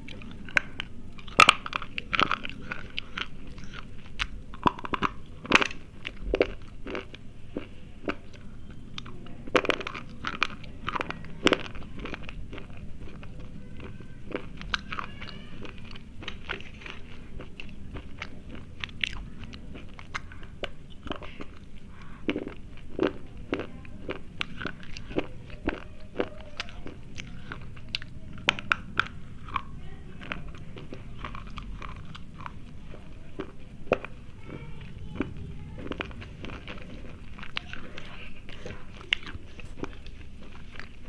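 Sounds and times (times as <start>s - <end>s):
crunching and chewing: 0.0s - 41.0s.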